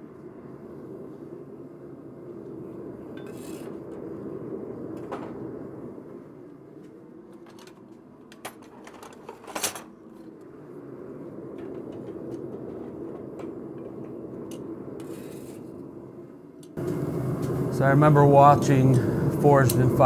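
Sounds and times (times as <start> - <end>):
low workshop rumble: 15.8 - 20.0.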